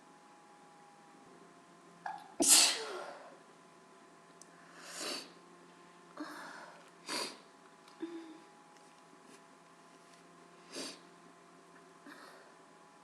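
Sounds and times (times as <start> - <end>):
woman sneezing: 2.4 - 3.2.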